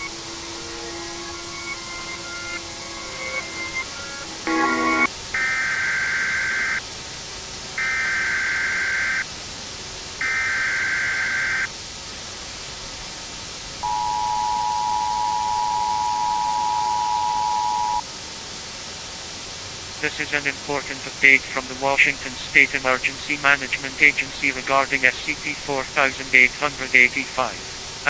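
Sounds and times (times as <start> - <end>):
two-tone attention signal: 0.0 - 5.1.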